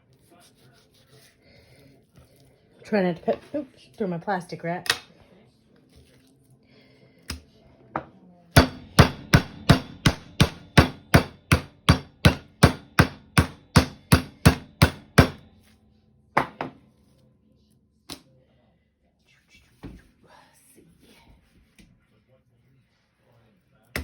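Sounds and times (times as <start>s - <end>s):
meat pounded on cutting board: 8.0s - 15.4s.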